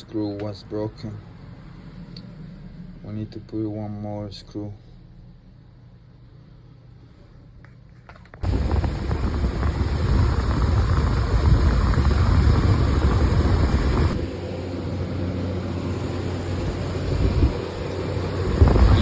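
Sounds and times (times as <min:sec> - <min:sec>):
air blower rushing: 0:08.4 - 0:19.0.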